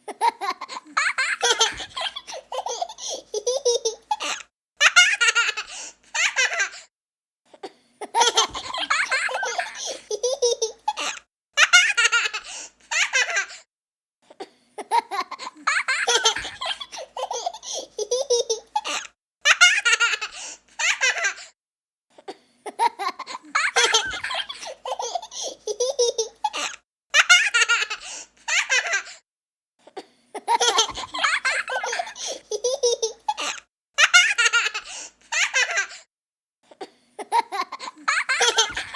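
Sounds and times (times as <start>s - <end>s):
young child giggling: 0.0s - 6.8s, 8.0s - 13.5s, 14.8s - 21.4s, 22.7s - 26.7s, 30.4s - 35.9s, 37.2s - 38.9s.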